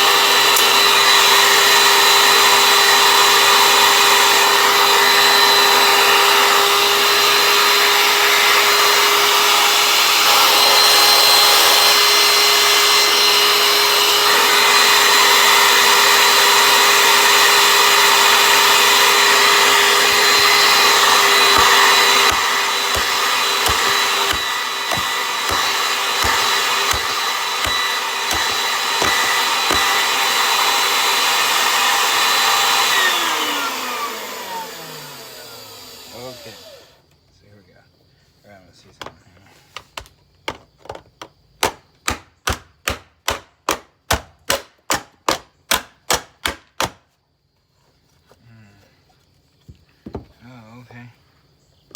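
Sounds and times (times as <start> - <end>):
motor winding down: 0.0 - 37.0
vacuum cleaner running: 0.0 - 37.0.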